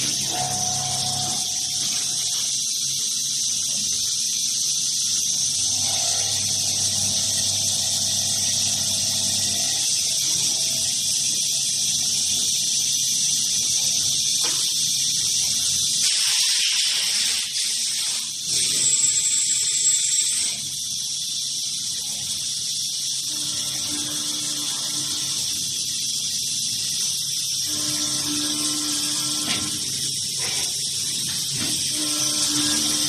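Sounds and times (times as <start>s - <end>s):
high-pitched cutting whine: 0.0s - 16.2s, 17.0s - 33.0s
machine air blast hiss: 0.0s - 33.0s
low machine hum: 5.7s - 11.0s.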